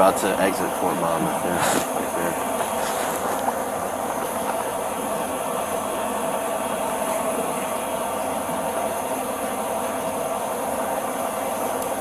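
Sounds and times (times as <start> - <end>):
steady rushing noise: 0.0 - 12.0.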